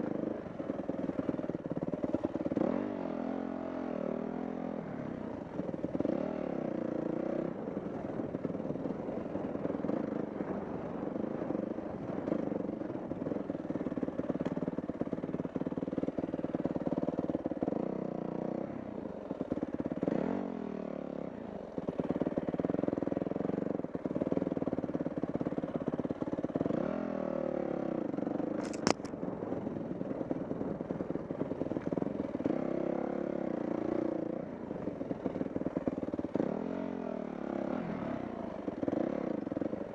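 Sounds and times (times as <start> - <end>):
sharp click: 28.6 - 29.1.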